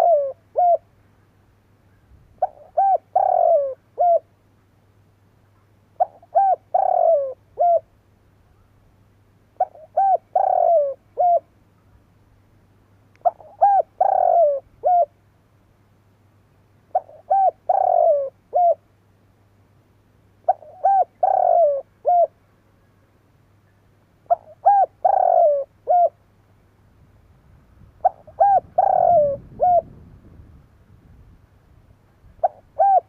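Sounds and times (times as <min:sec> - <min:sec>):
dove cooing: 0:00.0 - 0:00.9, 0:02.4 - 0:04.3, 0:06.0 - 0:07.9, 0:09.6 - 0:11.5, 0:13.2 - 0:15.2, 0:16.9 - 0:18.8, 0:20.4 - 0:22.4, 0:24.2 - 0:26.2, 0:28.0 - 0:30.0, 0:32.4 - 0:33.0.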